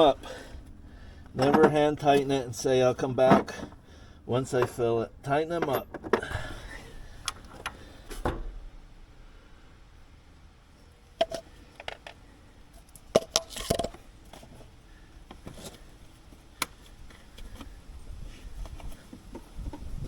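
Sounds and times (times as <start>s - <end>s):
hand tools clinking and knocking: 1.4s - 2.3s, 4.5s - 6.6s.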